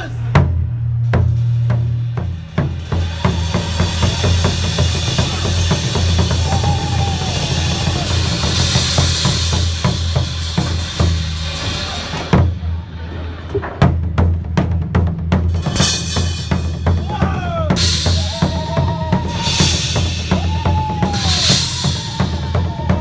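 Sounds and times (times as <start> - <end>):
deep steady bass: 0.0 - 7.0
drum kit music: 0.0 - 12.5, 13.8 - 23.0.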